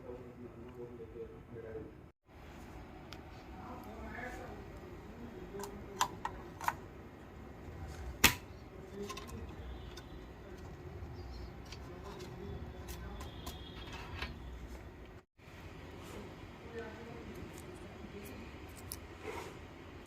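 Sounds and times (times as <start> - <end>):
computer parts clicking and tapping: 8.2 - 15.2.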